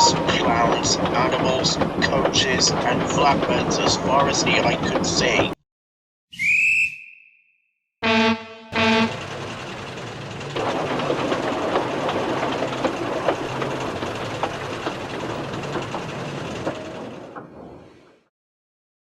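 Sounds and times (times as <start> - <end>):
train wheels clicking over rails: 0.0 - 5.6, 8.8 - 18.3
steam locomotive whistle toots: 6.3 - 7.4, 8.0 - 9.4.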